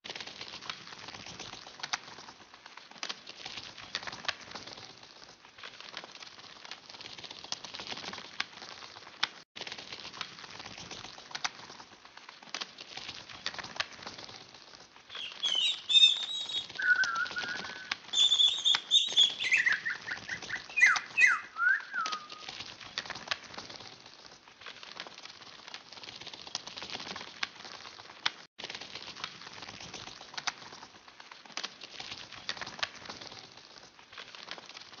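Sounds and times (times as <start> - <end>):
bird wings flapping: 0.1 - 35.0
chirping whistled bird calls: 15.1 - 22.5.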